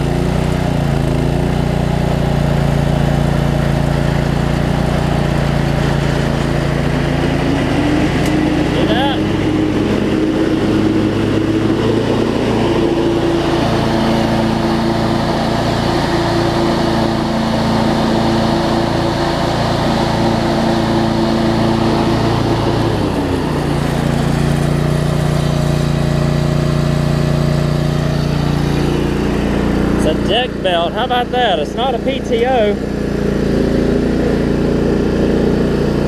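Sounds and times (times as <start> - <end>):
riding mower engine running: 0.0 - 36.0.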